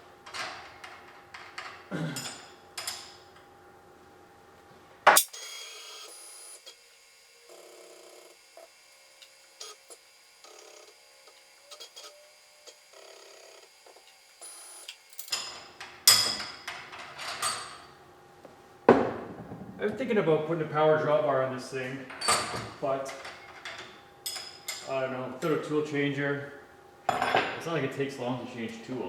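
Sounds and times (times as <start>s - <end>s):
tools clicking and clattering: 14.9s - 17.8s.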